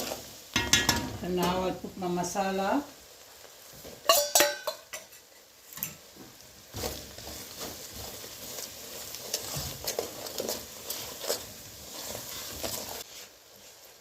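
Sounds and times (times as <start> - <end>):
light sizzle of frying: 0.0 - 14.0
spoon scraping in a pot: 6.7 - 14.0.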